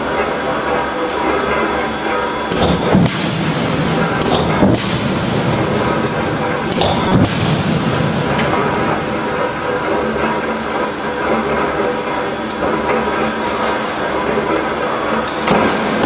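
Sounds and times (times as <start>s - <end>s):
forge machinery hissing: 0.0s - 16.0s.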